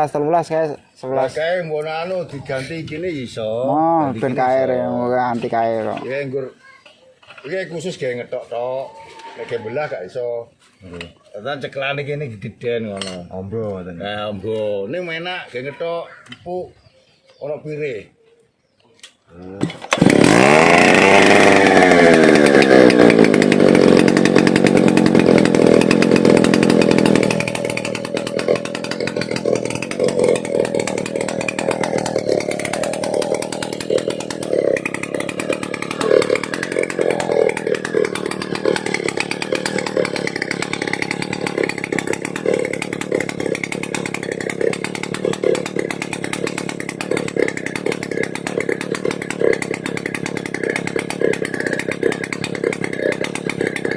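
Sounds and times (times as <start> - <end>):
chainsaw engine revving and idling: 3.7 - 6.2, 19.4 - 53.9.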